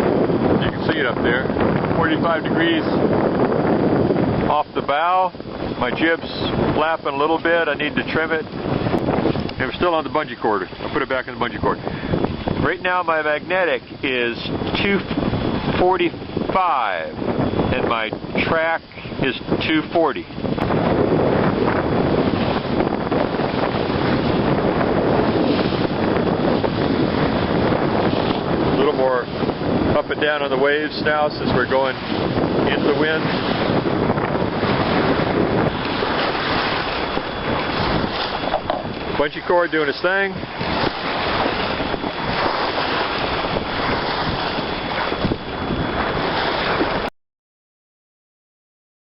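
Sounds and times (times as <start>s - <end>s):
waves washing against hull: 0.0s - 47.1s
wind buffeting microphone: 0.0s - 47.1s.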